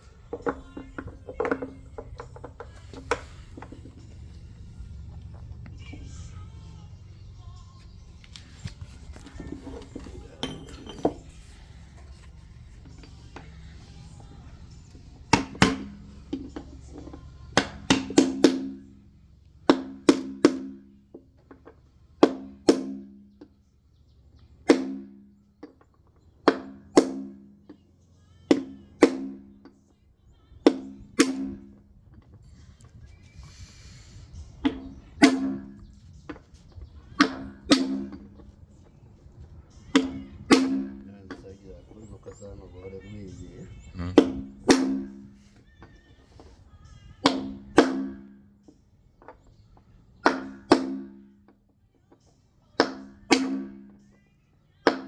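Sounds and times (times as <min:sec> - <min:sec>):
hammer striking metal: 0:15.3 - 0:16.0, 0:30.7 - 0:31.6, 0:34.7 - 0:35.8, 0:37.2 - 0:38.3, 0:40.0 - 0:41.1, 0:44.2 - 0:45.4, 0:47.3 - 0:48.4, 0:50.3 - 0:51.3, 0:52.8 - 0:54.0.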